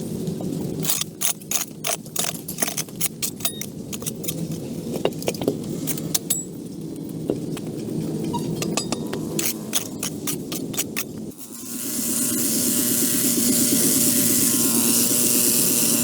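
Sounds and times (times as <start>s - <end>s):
steady low hum: 0.0s - 16.0s
hard objects clicking and clinking: 0.8s - 11.3s.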